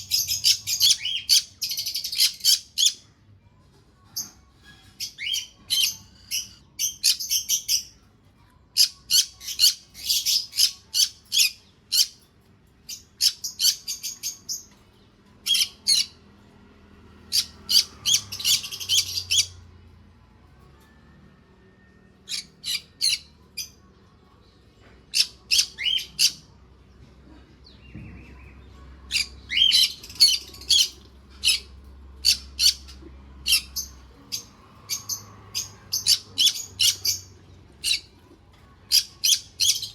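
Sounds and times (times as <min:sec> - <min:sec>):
parrots chirping: 0:00.0 - 0:03.0, 0:05.0 - 0:07.9, 0:08.8 - 0:12.3, 0:12.9 - 0:14.8, 0:15.4 - 0:16.2, 0:17.2 - 0:19.8, 0:22.2 - 0:23.7, 0:25.1 - 0:26.5, 0:29.1 - 0:38.2, 0:38.9 - 0:39.9.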